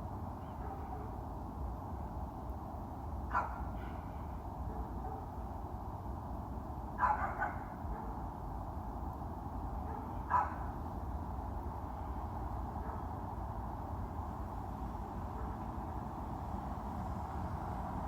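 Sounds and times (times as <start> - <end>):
dog barking: 0.4 - 1.2, 3.3 - 4.1, 4.7 - 5.3, 7.0 - 8.2, 9.8 - 10.7, 12.8 - 13.1.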